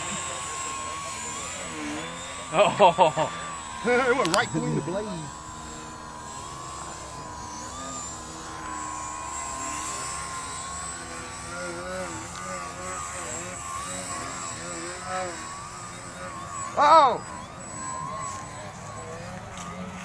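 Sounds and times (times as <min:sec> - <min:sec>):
model airplane motor whining: 0:00.0 - 0:20.0
model helicopter motor whining: 0:00.0 - 0:20.0.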